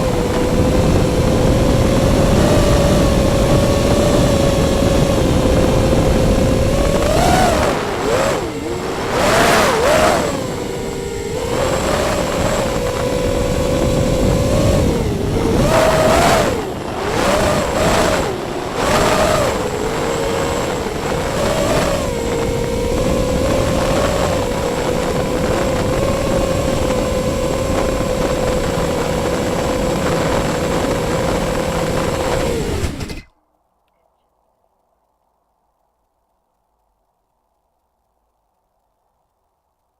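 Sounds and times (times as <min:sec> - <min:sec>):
electric motor and propeller whine: 0:00.0 - 0:33.3
bursts of rushing air: 0:05.6 - 0:13.1.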